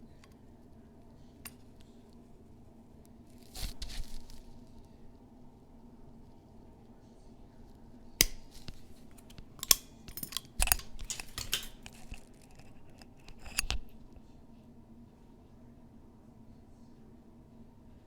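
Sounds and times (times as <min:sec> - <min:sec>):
locking pliers clicking and scraping: 0:08.2 - 0:14.0.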